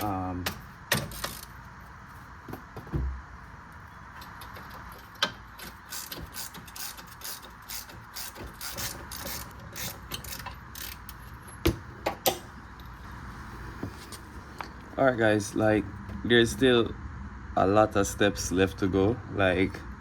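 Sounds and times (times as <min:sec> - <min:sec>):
ratchet wrench clicking: 0:04.3 - 0:11.6
sharp metal knocks: 0:11.6 - 0:12.6.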